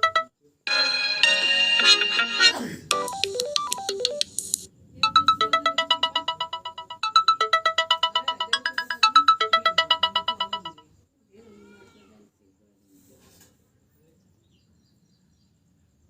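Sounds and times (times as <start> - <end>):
fast electronic beeping ringtone: 0.0 - 10.8
short stepping ringtone melody: 0.0 - 10.8.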